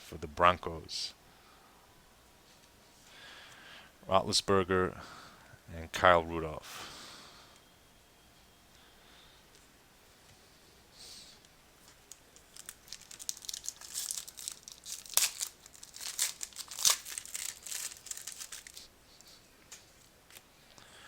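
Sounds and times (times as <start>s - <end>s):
wrapper being torn and crinkled: 12.0s - 18.9s.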